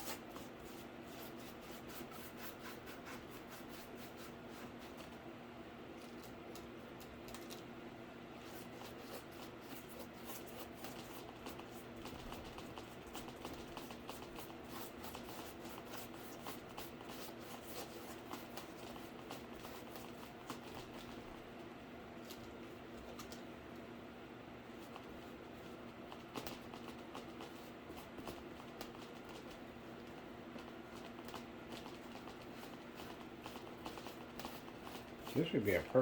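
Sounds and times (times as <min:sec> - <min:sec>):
paintbrush scratching cardboard: 0:00.0 - 0:05.2, 0:08.4 - 0:21.2, 0:30.6 - 0:35.8.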